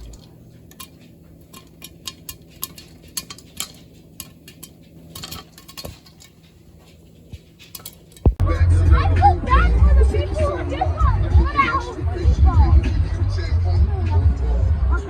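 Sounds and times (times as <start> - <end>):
light sharp clicks and clinks: 0.0 - 8.4.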